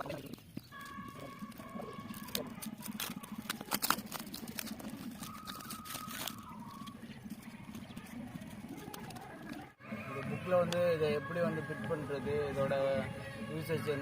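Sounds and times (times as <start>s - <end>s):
packaging clicks and rustles: 0.1s - 9.7s.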